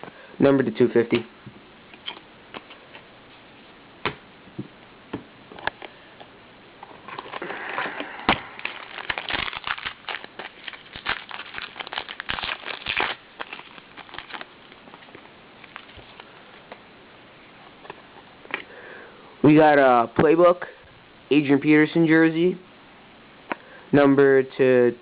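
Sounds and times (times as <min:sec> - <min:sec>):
wrapper crinkling: 0:07.1 - 0:16.3.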